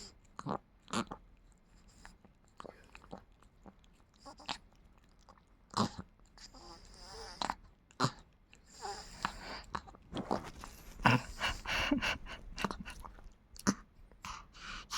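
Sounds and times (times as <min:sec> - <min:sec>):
dog chewing: 0:09.0 - 0:14.8.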